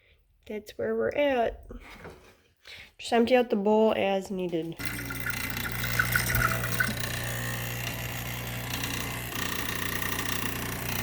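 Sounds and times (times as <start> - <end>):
espresso machine pump buzzing: 4.8 - 11.0.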